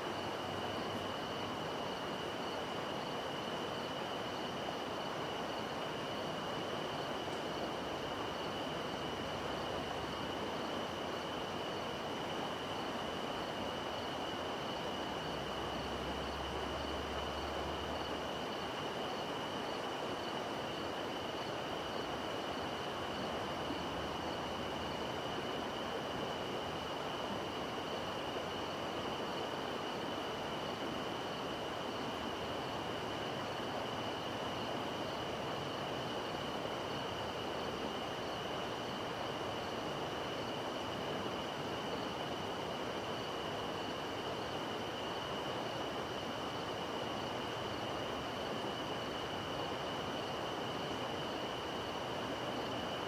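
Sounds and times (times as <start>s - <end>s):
night insects trilling: 0.0s - 53.0s
river water flowing: 0.0s - 53.0s.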